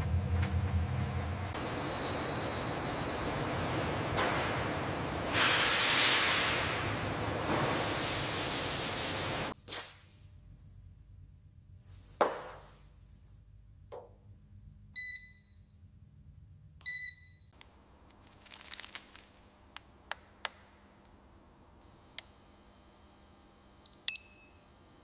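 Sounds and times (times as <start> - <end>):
short beeps: 23.8 - 24.8.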